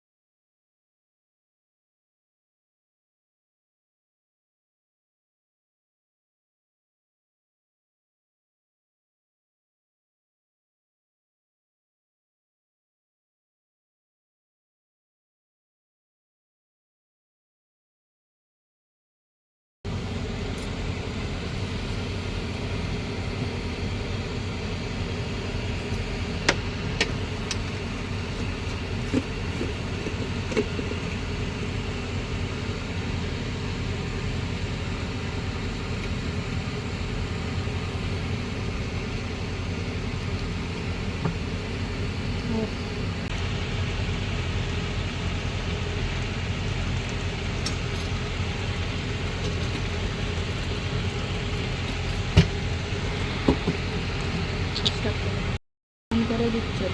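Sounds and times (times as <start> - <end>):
steady low hum: 19.9 - 56.9.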